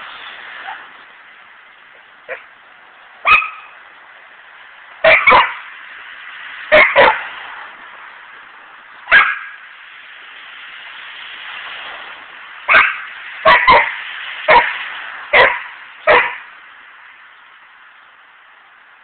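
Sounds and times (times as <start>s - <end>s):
dog barking: 3.2s - 3.7s, 5.0s - 5.6s, 6.7s - 7.2s, 9.1s - 9.5s, 12.7s - 13.9s, 14.5s - 14.7s, 15.3s - 16.4s.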